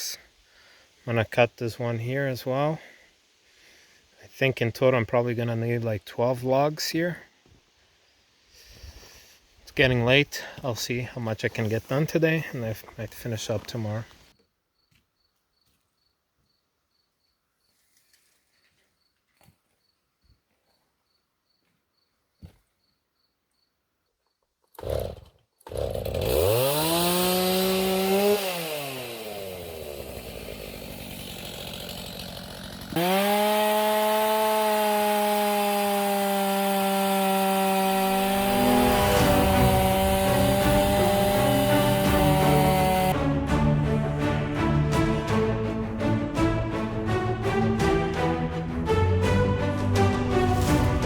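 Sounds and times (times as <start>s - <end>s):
chainsaw revving: 24.8s - 43.2s.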